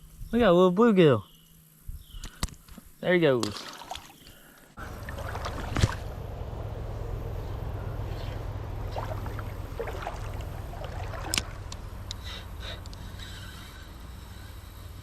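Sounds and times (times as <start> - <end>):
trickling water: 3.4 - 12.1
low rumble: 4.8 - 12.6.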